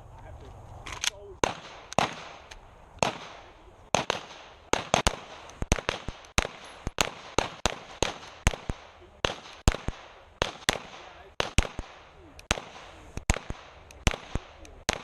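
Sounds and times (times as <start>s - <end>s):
handgun shots with echo: 1.0s - 15.0s.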